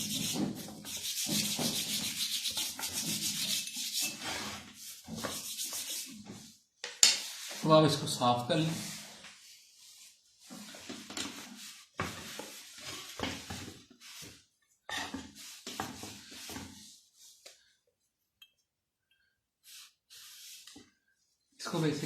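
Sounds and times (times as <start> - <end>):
metal hub being scrubbed: 0.0 - 6.2.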